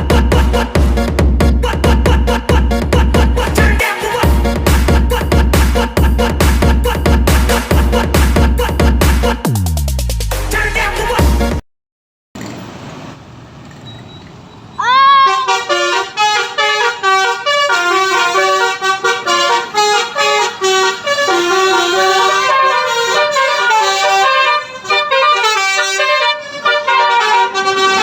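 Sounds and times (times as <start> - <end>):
multi-tone musical air horn: 15.0 - 28.0.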